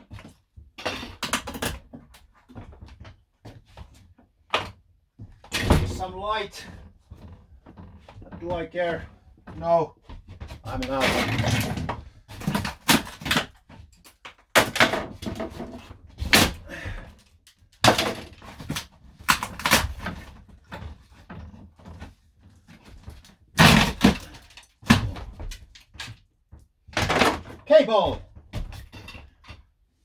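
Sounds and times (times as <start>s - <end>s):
knocks and thuds of hand work: 22.9s - 29.3s.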